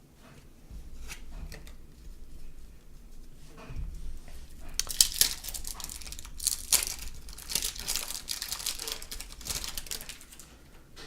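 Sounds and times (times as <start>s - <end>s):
wrapper crinkling and tearing: 4.6s - 10.6s.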